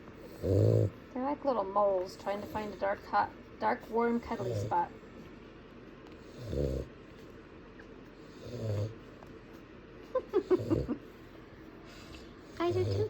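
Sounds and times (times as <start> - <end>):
puppies grunting softly: 0.1 - 1.1, 4.0 - 5.2, 6.1 - 9.2.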